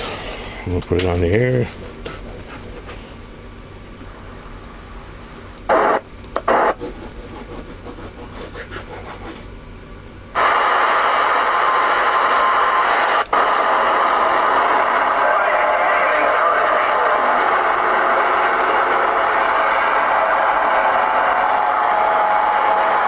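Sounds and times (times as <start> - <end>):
radio static hiss: 5.6 - 6.8, 10.4 - 23.0
radio sound bursts: 5.7 - 6.8, 10.4 - 22.4.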